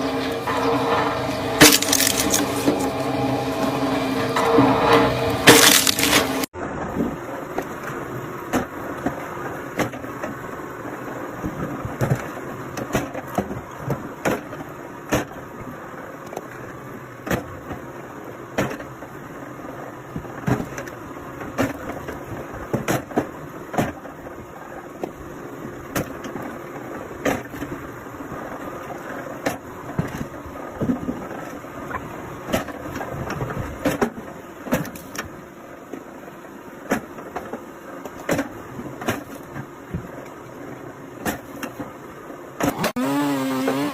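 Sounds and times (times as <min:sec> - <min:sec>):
wood-processing machine engine running: 0:00.0 - 0:06.5, 0:42.7 - 0:43.9.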